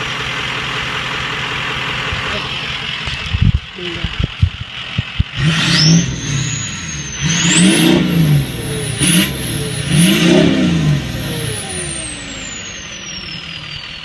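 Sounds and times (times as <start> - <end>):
diesel engine revving: 0.0 - 14.0
turbo whistle: 5.4 - 14.0.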